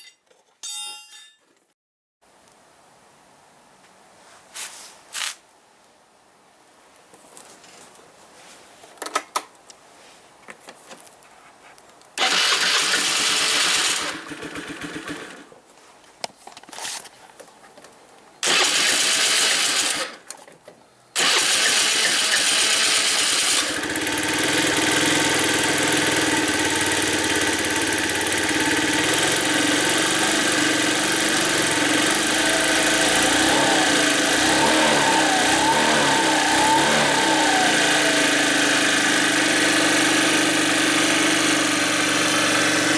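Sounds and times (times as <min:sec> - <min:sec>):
scooter engine idling: 0:12.2 - 0:15.4, 0:21.2 - 0:42.9
scooter engine cranking: 0:12.2 - 0:15.5, 0:18.4 - 0:20.3, 0:21.2 - 0:42.9.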